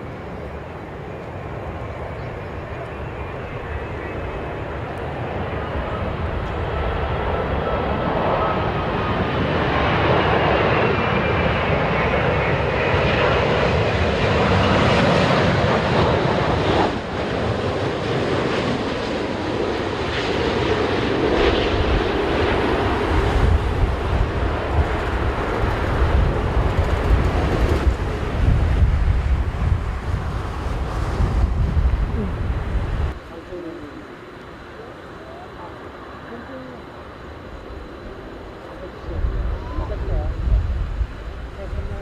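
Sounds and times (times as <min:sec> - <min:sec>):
deep gusty low rumble: 0:00.0 - 0:34.4, 0:35.5 - 0:42.0
jet airliner engine whine: 0:00.0 - 0:42.0.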